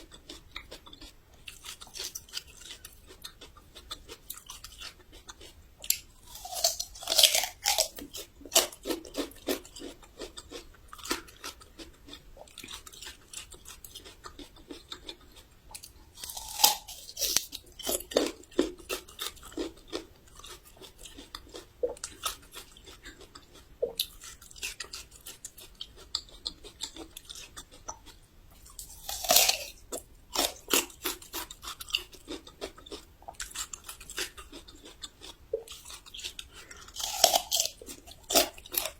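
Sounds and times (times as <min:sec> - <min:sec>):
ginger root being bitten and chewed: 0:00.0 - 0:38.9.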